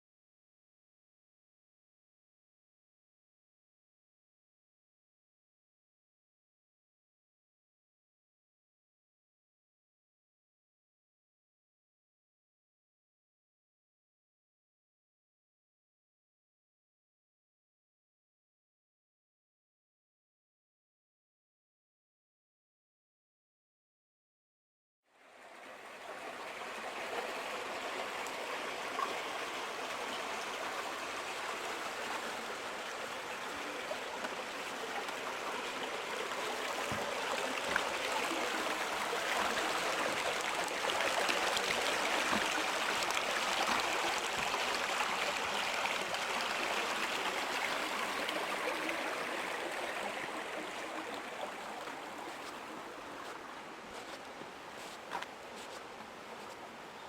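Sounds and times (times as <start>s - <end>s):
small waterfall rushing: 25.2s - 57.0s.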